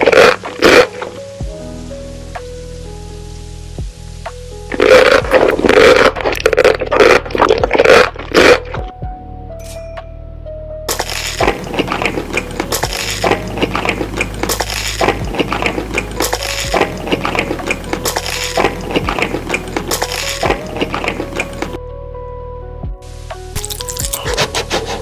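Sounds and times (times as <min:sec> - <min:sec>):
food and utensils crackling: 0:00.0 - 0:01.2, 0:04.7 - 0:08.8, 0:10.9 - 0:21.8, 0:23.6 - 0:25.0
background music: 0:00.0 - 0:25.0.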